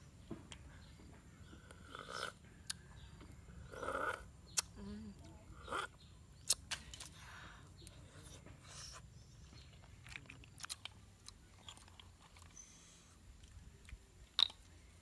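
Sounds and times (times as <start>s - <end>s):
person chewing softly: 0.4s - 15.0s
mouth clicks: 1.6s - 4.9s.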